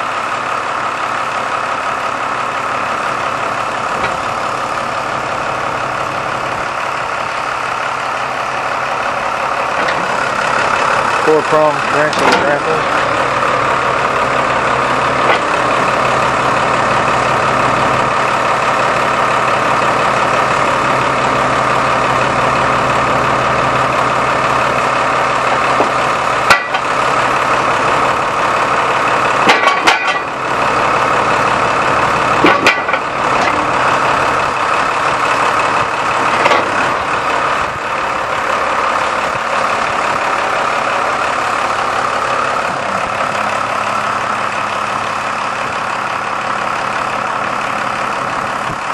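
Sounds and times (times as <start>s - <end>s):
diesel engine idling: 0.0s - 48.9s
sharp engine knocks: 3.9s - 4.2s, 11.9s - 13.2s, 15.2s - 15.8s, 25.7s - 27.0s, 29.3s - 30.5s, 32.3s - 33.8s, 35.8s - 37.0s.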